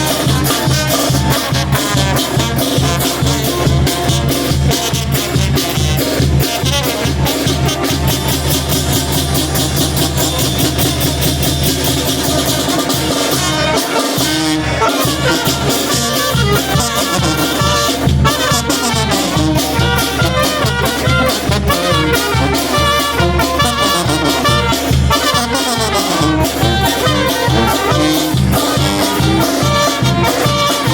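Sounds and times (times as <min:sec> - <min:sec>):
brass band playing: 0:00.0 - 0:30.9
drums on a steady beat: 0:00.0 - 0:30.9.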